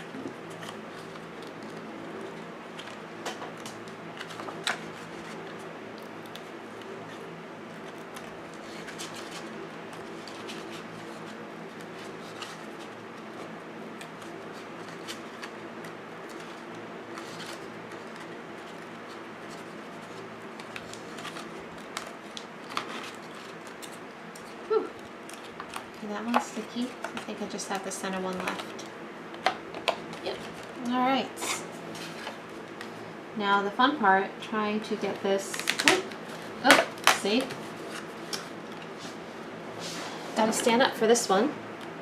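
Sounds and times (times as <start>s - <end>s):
steady low hum: 0.0s - 42.0s
fingernails peeling paper backings: 0.1s - 28.9s.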